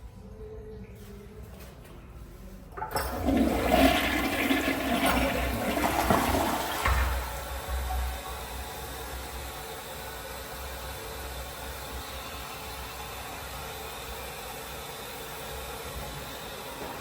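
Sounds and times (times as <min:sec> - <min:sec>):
toilet flushing: 0:02.8 - 0:17.0.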